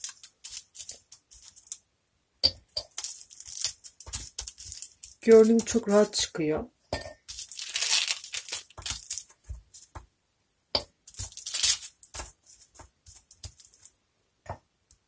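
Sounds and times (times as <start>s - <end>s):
baking paper crinkling: 0.0s - 1.8s, 2.9s - 6.4s, 7.3s - 10.0s, 11.0s - 14.0s.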